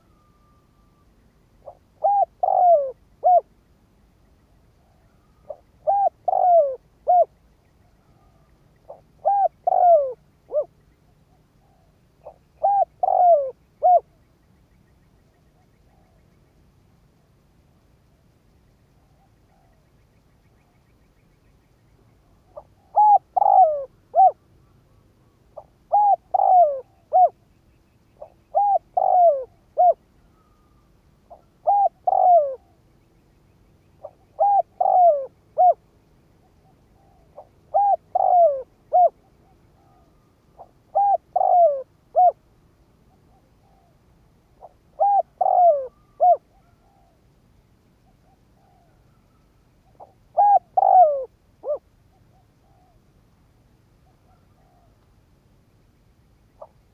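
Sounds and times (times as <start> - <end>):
dove cooing: 0.0 - 3.6, 4.8 - 14.2, 22.2 - 27.4, 28.2 - 32.8, 34.0 - 35.8, 36.4 - 42.4, 43.1 - 47.2, 48.0 - 53.1, 54.0 - 55.0, 56.6 - 56.8.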